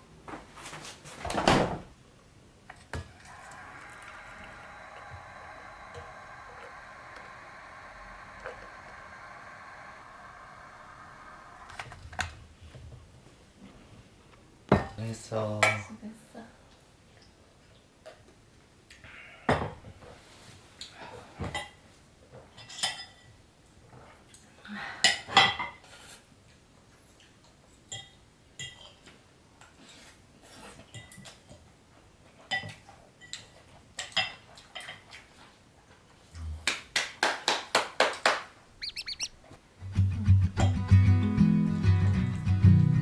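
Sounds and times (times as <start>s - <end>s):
music: 39.8s - 43.0s.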